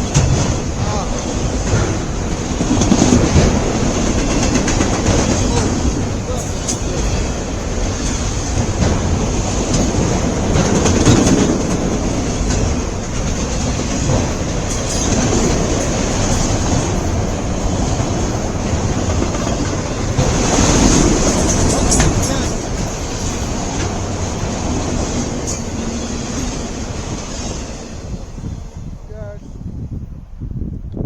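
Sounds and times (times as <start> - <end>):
wheels clicking over rail joints: 0.0 - 29.0
freight train rumbling past: 0.0 - 31.0.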